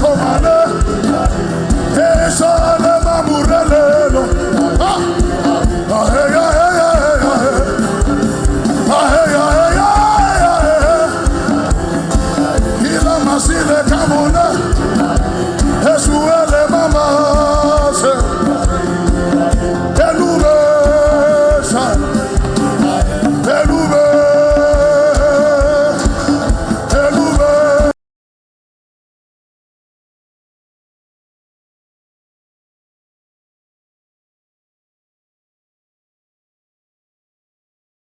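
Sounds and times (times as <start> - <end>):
quick drum beat: 0.0 - 27.9.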